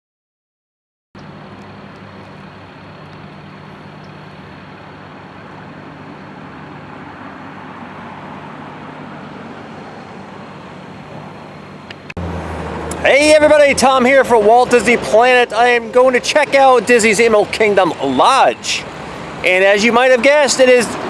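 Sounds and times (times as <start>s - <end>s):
low steady hum: 1.2s - 11.9s
motor vehicle noise: 1.2s - 21.0s.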